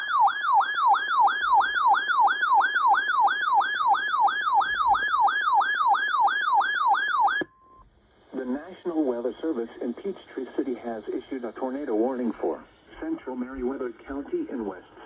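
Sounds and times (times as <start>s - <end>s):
warbling electronic siren tone: 0.0s - 7.4s.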